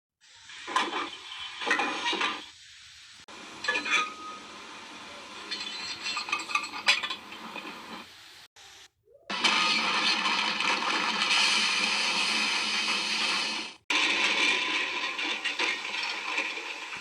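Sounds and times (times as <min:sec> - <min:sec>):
steady hiss: 0:00.2 - 0:10.0
metal clanking and clinking: 0:05.5 - 0:07.7.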